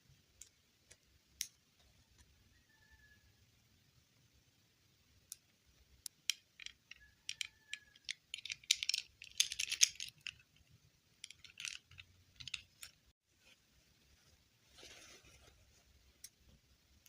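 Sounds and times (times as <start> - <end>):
plastic doll pieces clicking: 6.0 - 13.0.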